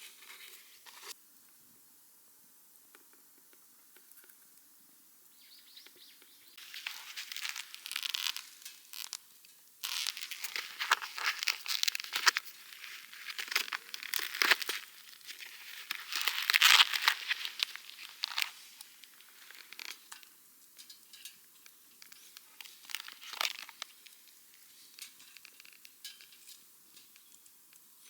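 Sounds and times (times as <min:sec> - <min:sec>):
bag crinkling and rustling: 0:06.6 - 0:09.2, 0:09.8 - 0:20.2, 0:22.1 - 0:25.6.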